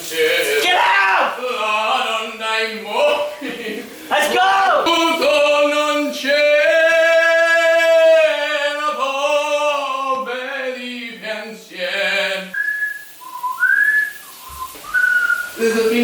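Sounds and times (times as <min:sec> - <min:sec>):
man singing operatically: 0:00.1 - 0:12.6, 0:15.5 - 0:16.0
man whistling: 0:12.5 - 0:15.9.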